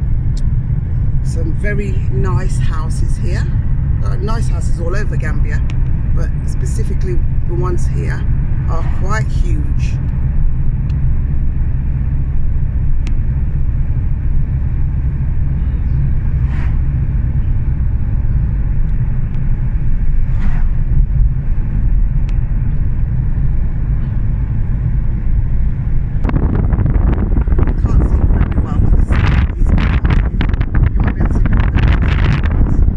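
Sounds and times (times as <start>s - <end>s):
car engine and tyres rumbling: 0.0s - 32.9s
loud rushing noise: 7.2s - 12.4s, 14.3s - 32.9s.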